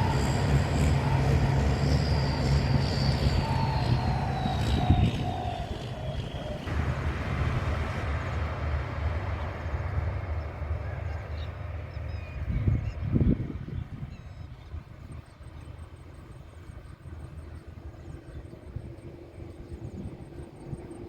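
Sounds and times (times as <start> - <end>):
high whine: 0.0 - 12.2
diesel engine drone: 0.0 - 21.0
train running on rails: 0.0 - 21.0.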